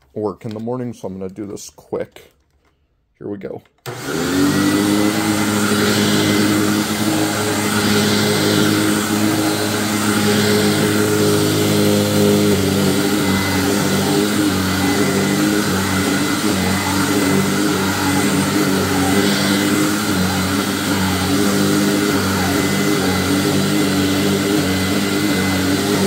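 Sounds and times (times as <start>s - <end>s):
upright vacuum cleaner running: 3.8s - 26.0s.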